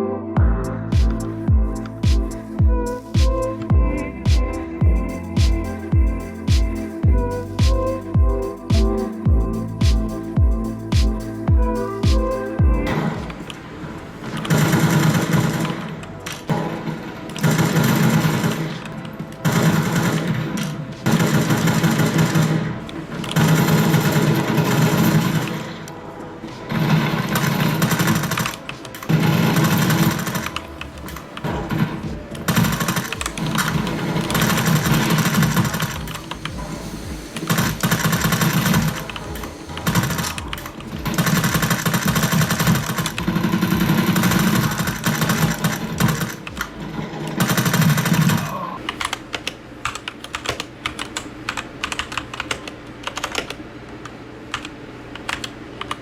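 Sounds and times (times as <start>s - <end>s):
mechanical keyboard typing: 47.3s - 53.6s, 54.5s - 56.0s.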